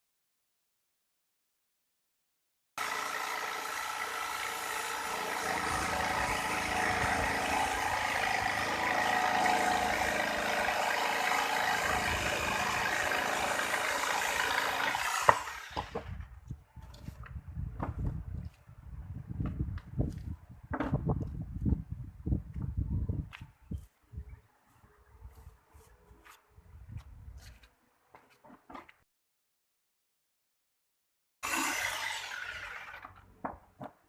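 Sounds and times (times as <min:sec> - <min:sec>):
power tool motor whining: 0:02.8 - 0:16.0, 0:31.4 - 0:33.2.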